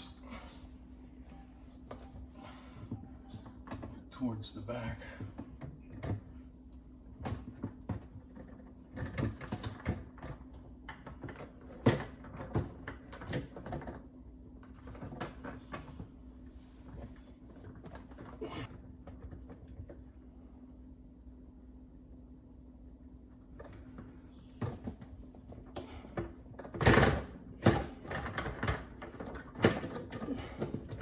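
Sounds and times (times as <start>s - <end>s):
dishwasher parts clicking and knocking: 24.6s - 31.0s.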